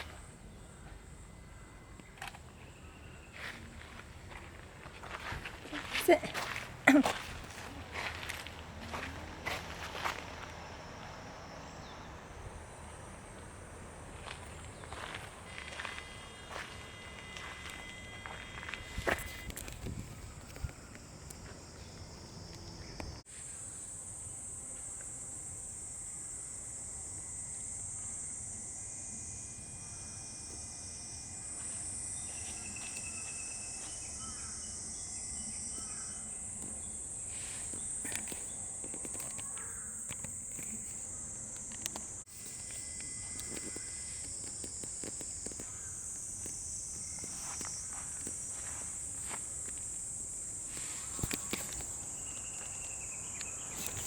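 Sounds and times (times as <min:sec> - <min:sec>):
high insect chorus: 0:00.0 - 0:54.0
faint footsteps: 0:03.3 - 0:11.2, 0:14.1 - 0:22.1, 0:42.2 - 0:50.0.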